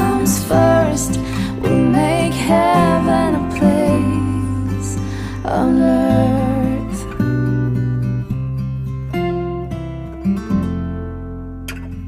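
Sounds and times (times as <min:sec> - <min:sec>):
acoustic guitar chord ringing: 0:00.0 - 0:12.0.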